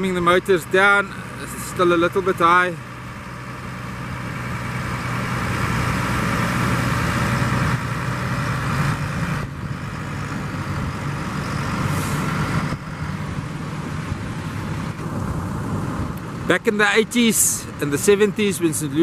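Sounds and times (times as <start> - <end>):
boat motors running: 0.0 - 11.8
wind: 0.0 - 19.0.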